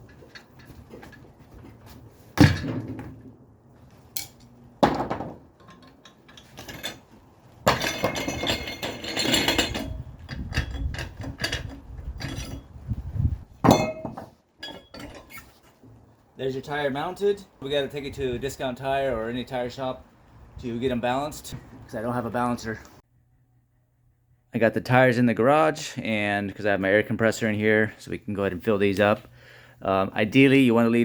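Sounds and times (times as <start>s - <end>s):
tire spoons clanking on wheel rim: 5.6s - 12.7s.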